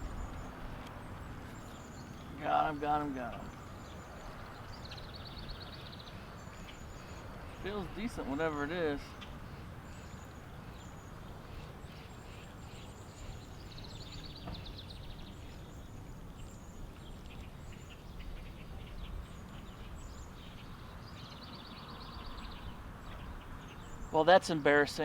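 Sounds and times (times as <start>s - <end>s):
low steady rumble: 0.0s - 20.7s
birds chirping and trilling: 0.0s - 25.0s.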